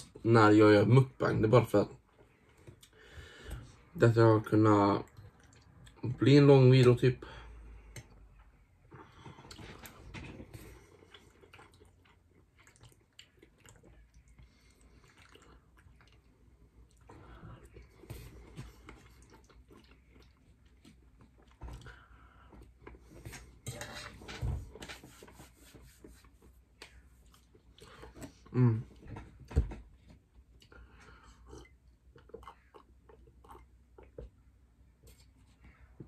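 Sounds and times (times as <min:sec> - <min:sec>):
chewing and wet mouth sounds: 0:02.1 - 0:03.9, 0:04.6 - 0:07.0, 0:07.6 - 0:23.6, 0:26.3 - 0:29.1, 0:30.2 - 0:36.0.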